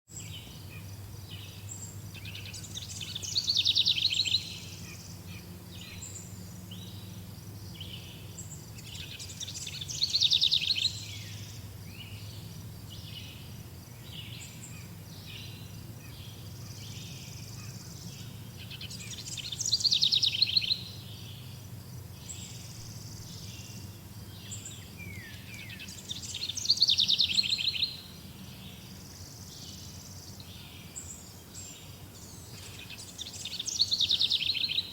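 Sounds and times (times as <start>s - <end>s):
songbird singing loud rapid song: 0.1s - 34.9s
faint steady low hum: 0.2s - 34.9s
faint bird chirps: 22.2s - 34.9s.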